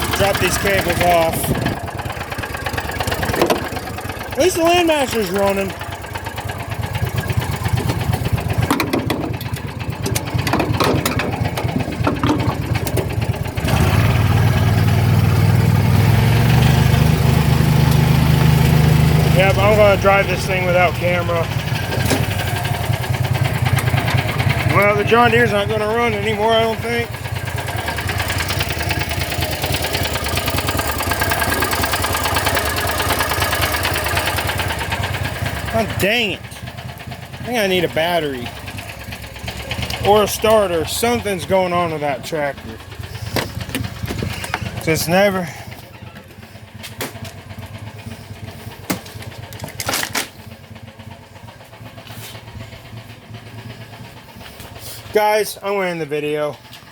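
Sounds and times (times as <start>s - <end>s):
small engine idling: 0.0s - 56.9s
clicks and knocks: 7.8s - 13.3s.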